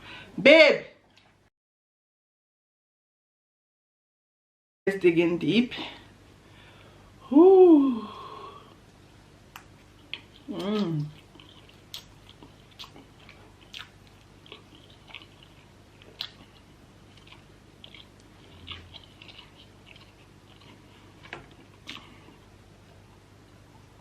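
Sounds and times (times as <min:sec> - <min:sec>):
mouth smacks and clicks: 0:09.5 - 0:16.5
chewing and biting: 0:09.5 - 0:22.5.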